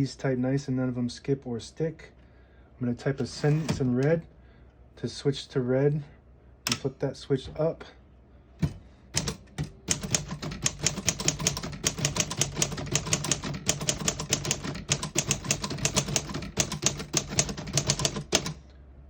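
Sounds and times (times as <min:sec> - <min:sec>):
manual typewriter typing: 0:09.2 - 0:18.6.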